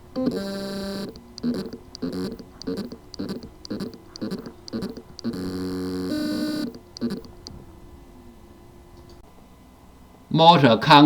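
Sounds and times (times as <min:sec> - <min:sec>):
hard drive motor whine: 0:00.0 - 0:09.2
hard drive rhythmic pulsing: 0:00.0 - 0:09.2.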